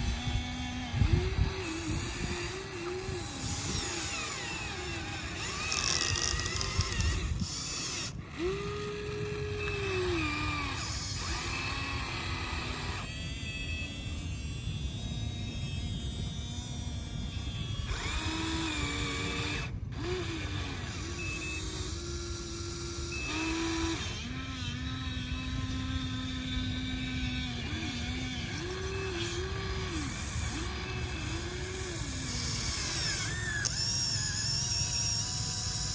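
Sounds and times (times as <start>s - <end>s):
small electric motors whining: 0.0s - 35.9s.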